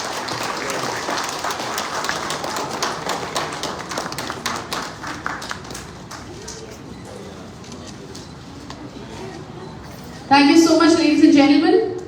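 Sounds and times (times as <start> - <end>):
audience applauding: 0.0 - 6.7.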